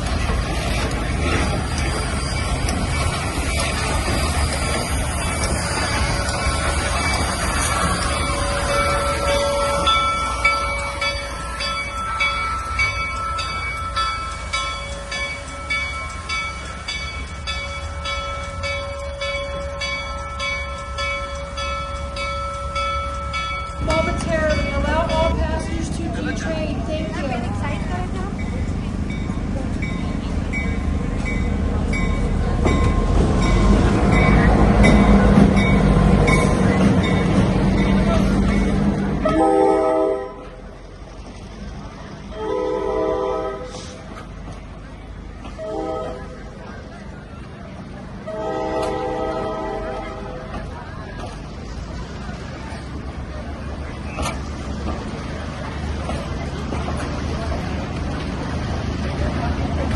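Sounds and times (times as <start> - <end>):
train rumbling: 0.0 - 59.9
bell ringing: 1.4 - 25.6.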